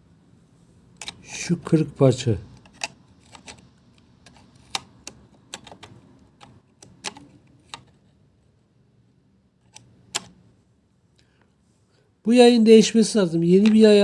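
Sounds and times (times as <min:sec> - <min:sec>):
hard plastic parts clicking: 0:01.0 - 0:01.2, 0:02.5 - 0:08.0, 0:09.6 - 0:10.4.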